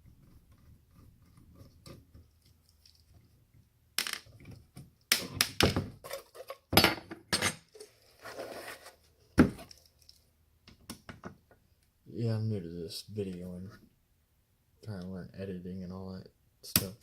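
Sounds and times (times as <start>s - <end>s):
scraping rustle: 7.8s - 9.2s.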